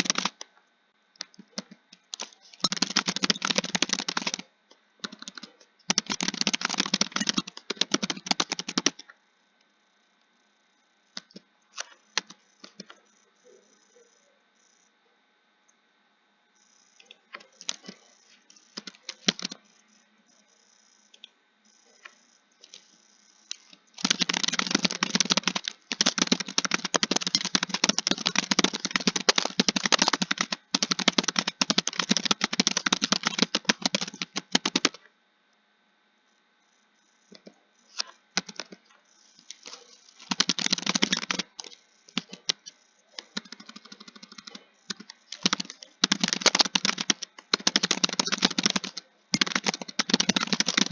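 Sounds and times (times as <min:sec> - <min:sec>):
computer keyboard typing: 0:00.0 - 0:00.5, 0:01.2 - 0:09.2, 0:11.2 - 0:13.0, 0:17.0 - 0:19.7, 0:23.5 - 0:35.0, 0:37.3 - 0:38.8, 0:39.4 - 0:50.9.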